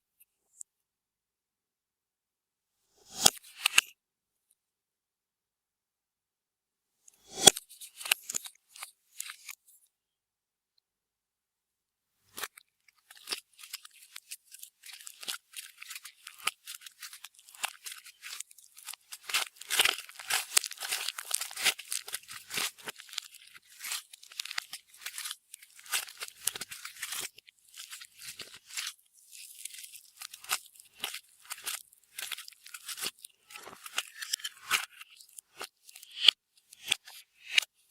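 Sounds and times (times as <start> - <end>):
slime crackling and popping: 13.1 - 37.0.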